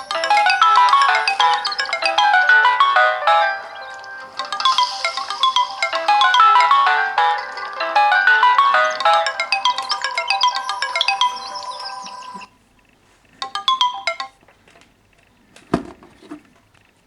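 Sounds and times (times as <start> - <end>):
phone alarm tunes ringing: 0.0 - 12.5, 13.4 - 14.4.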